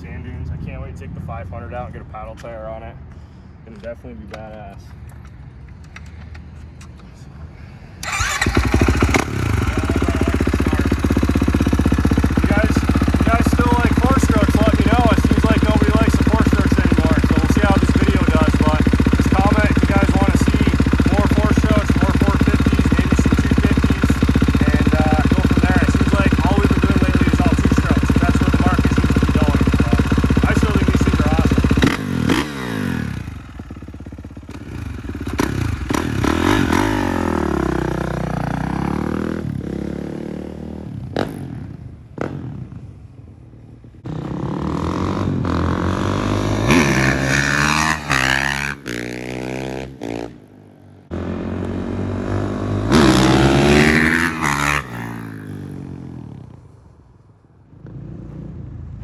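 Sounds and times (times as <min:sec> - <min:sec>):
dirt bike engine revving: 0:08.0 - 0:42.6, 0:44.0 - 0:56.6.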